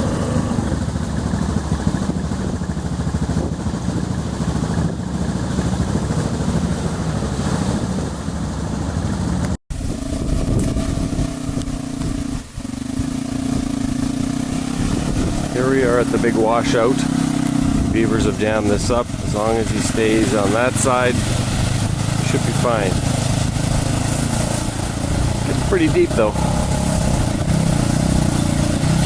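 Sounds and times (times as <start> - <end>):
off-road vehicle engine running: 0.0 - 29.0.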